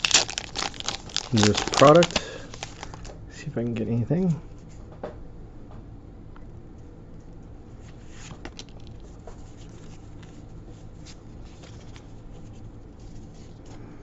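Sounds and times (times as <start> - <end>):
card pack rustling and crinkling: 0.0 - 3.1.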